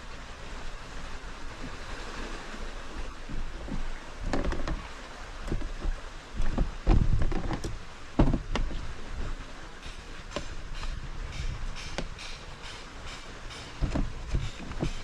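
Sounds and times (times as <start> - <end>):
knocks and taps on fishing rod: 9.8 - 15.0.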